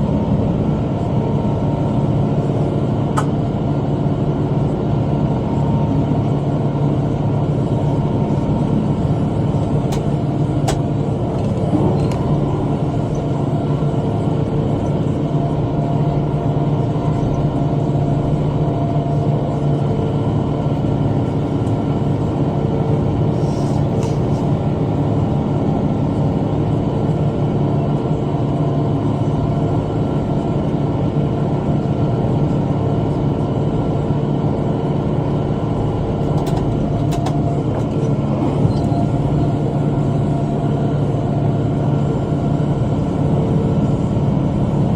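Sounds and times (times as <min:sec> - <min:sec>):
tractor engine under load: 0:08.4 - 0:14.4, 0:35.4 - 0:40.3.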